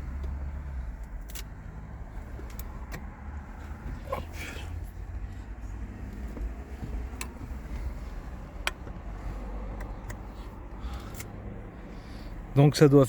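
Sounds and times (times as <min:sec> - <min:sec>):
steady low rumble: 0:00.0 - 0:13.0
light handling clicks: 0:09.7 - 0:11.4.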